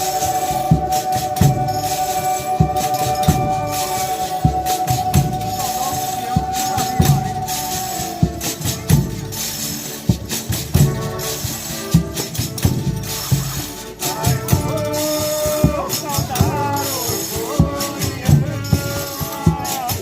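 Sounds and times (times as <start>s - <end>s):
long held instrumental note: 0.0s - 9.6s
steady drum beat: 0.0s - 20.0s
tambourines jingling: 0.0s - 20.0s.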